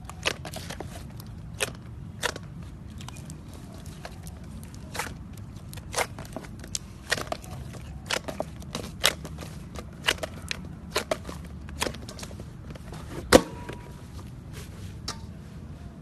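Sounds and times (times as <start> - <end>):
slime popping and crackling: 0.0 - 12.2.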